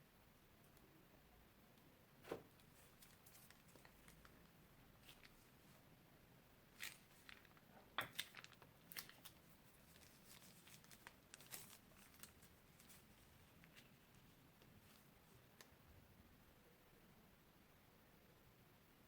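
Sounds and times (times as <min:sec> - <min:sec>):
slime crackling and popping: 0:06.8 - 0:13.9.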